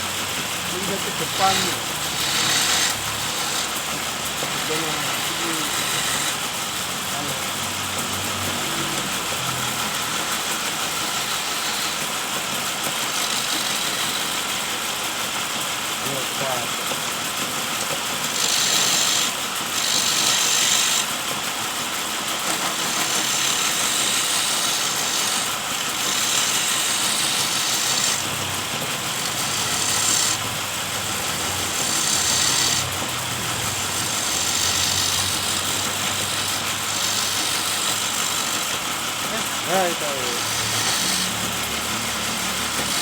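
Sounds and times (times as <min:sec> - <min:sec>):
chisel cutting spinning wood: 0:00.0 - 0:43.0
electric motor lathe running: 0:00.0 - 0:43.0.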